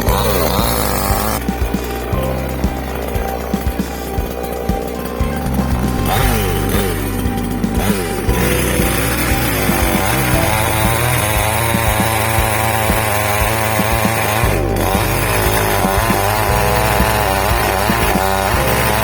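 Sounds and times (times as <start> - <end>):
chainsaw cutting wood: 0.0 - 2.0, 7.8 - 19.0.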